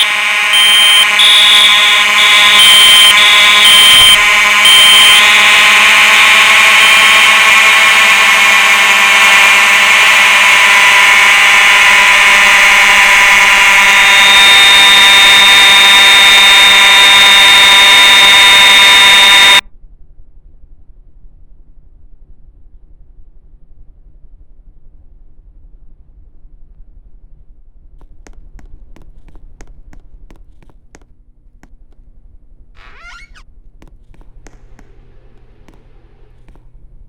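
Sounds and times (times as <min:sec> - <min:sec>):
fire alarm buzzing: 0:00.0 - 0:19.6, 0:32.8 - 0:33.4
high pulsing tone: 0:00.0 - 0:19.6.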